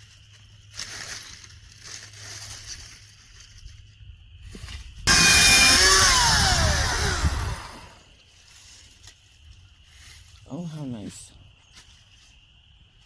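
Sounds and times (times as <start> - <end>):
rustling of brush: 0.0 - 5.0, 8.0 - 13.0
motor saw cutting wood: 5.1 - 8.0.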